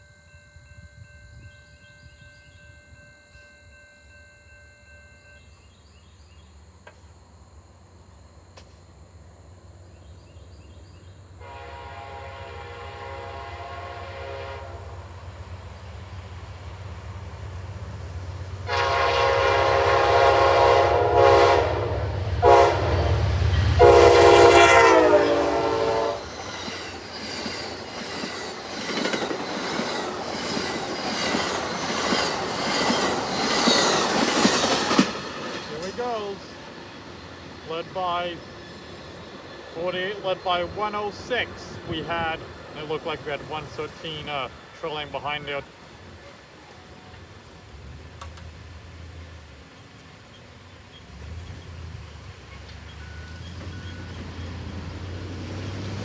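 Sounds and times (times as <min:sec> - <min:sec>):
diesel locomotive rumble: 0:10.7 - 0:56.0
train air horn blasts: 0:11.4 - 0:15.1, 0:18.6 - 0:26.4
train wheels clicking on rails: 0:23.1 - 0:56.0.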